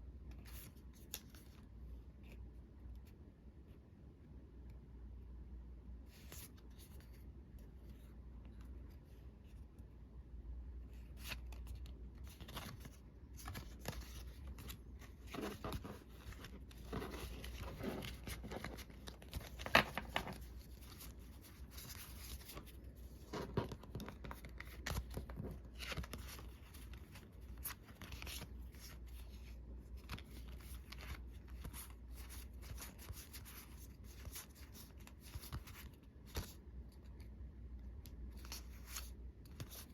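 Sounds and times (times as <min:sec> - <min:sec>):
cards clicking and rustling: 0:11.2 - 0:37.2.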